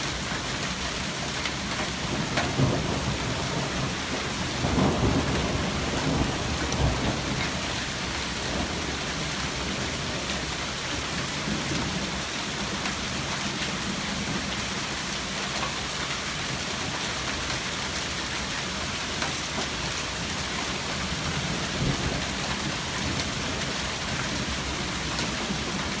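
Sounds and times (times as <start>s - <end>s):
hail and rain pelting: 0.0s - 26.0s
hailstones ticking: 0.0s - 26.0s
low rumble of thunder: 1.8s - 14.7s, 20.2s - 26.0s.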